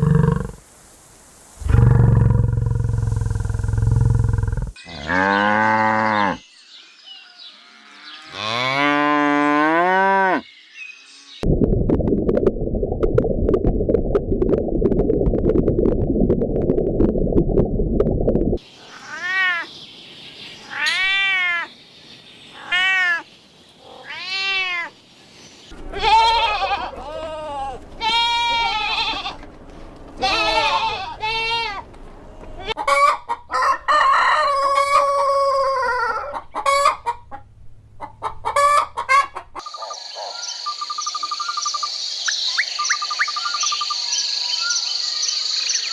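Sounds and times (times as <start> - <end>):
low rough animal sound: 0.0 - 0.6, 1.6 - 6.4.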